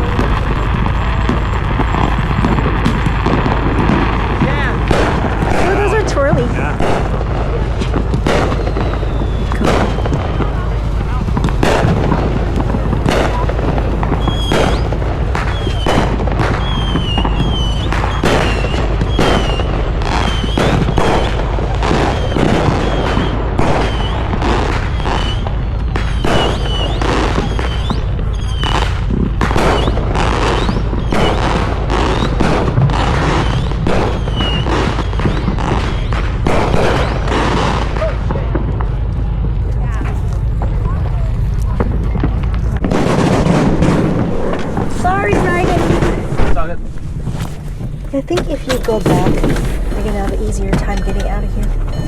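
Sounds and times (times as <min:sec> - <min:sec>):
falling firework whistles: 0:00.0 - 0:38.8
fireworks bangs and booms: 0:00.0 - 0:52.0.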